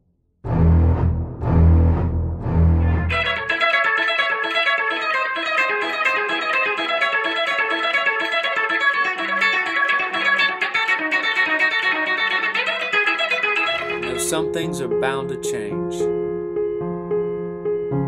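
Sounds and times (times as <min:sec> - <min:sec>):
picked guitar music: 0:02.6 - 0:16.6.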